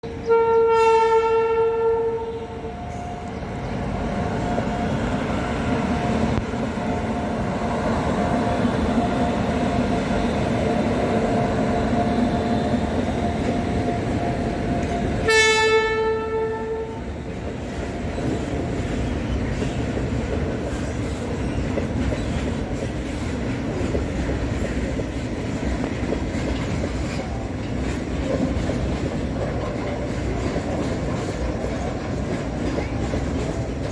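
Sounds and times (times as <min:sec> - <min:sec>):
train rumbling and clattering past: 0:00.0 - 0:33.9
locomotive air horn: 0:00.1 - 0:02.9, 0:15.2 - 0:17.1.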